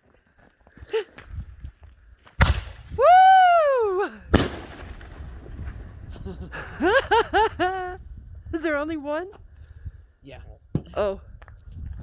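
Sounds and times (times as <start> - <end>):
firework burst bang: 2.4 - 2.9, 4.3 - 6.0
firework launch bang: 2.4 - 3.0, 4.3 - 6.1
firework whistle wailing: 2.9 - 5.1
firework crackle: 4.3 - 6.7.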